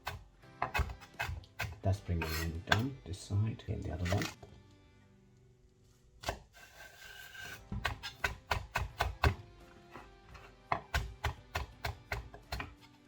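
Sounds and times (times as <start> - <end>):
knife chopping on cutting board: 0.0 - 2.9, 6.2 - 12.8
background music: 0.0 - 13.0.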